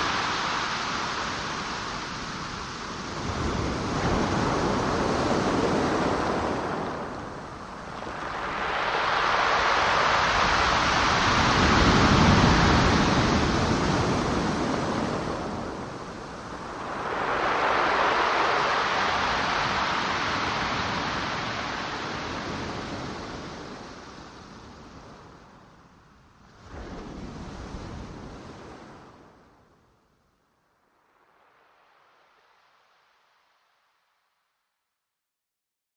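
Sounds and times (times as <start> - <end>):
ocean waves breaking: 0.0 - 25.3.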